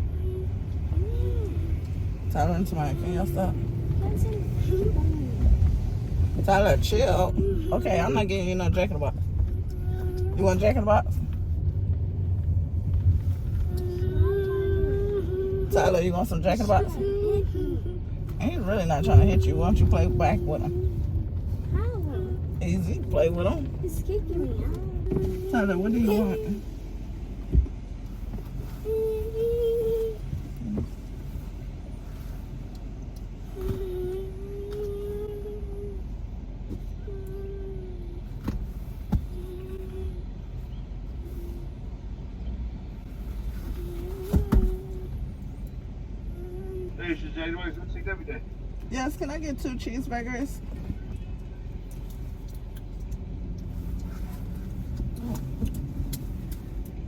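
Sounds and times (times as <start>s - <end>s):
car cabin rumble: 0.0s - 57.0s
child humming: 13.7s - 15.8s, 33.6s - 36.0s, 46.3s - 47.0s.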